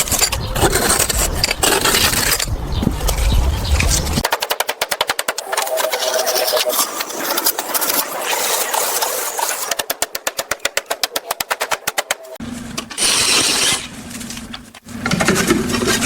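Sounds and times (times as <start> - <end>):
power tool rattling: 12.8 - 13.9.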